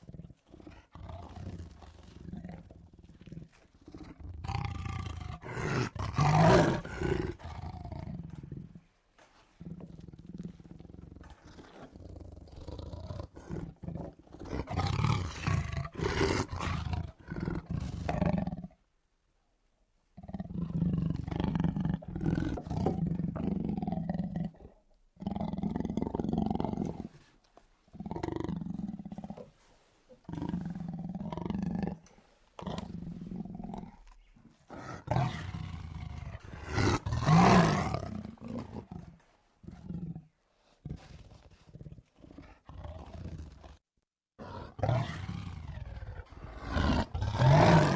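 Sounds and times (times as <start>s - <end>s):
lions snarling and roaring: 0.0s - 8.9s, 9.6s - 18.6s, 30.3s - 43.8s, 44.4s - 47.9s.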